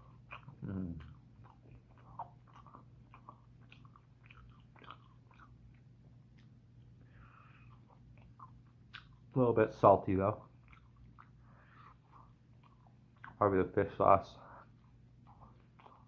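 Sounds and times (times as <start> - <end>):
chewing and biting: 0.0 - 9.4, 10.3 - 13.8, 14.5 - 16.0
steady low hum: 0.0 - 16.0.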